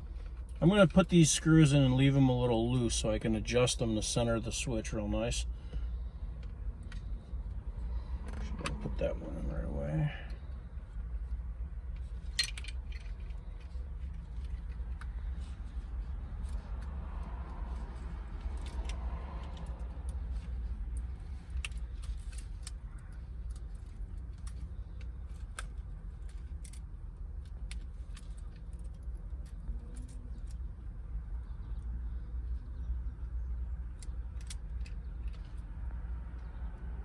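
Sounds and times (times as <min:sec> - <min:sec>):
steady low hum: 0:00.0 - 0:37.0
screwdriver clicks and metal clinks: 0:12.3 - 0:13.4.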